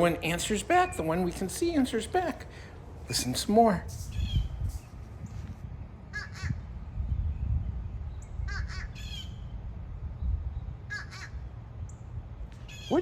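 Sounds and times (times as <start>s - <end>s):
birds squawking: 0.0s - 5.0s, 6.0s - 6.8s, 8.4s - 9.5s, 10.8s - 11.7s, 12.6s - 13.0s.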